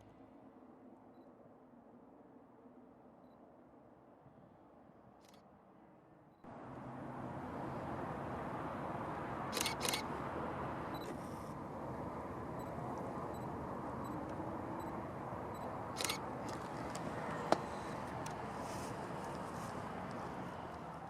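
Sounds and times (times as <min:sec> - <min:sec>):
camera shutter clicks: 0:09.5 - 0:10.1, 0:16.0 - 0:17.0.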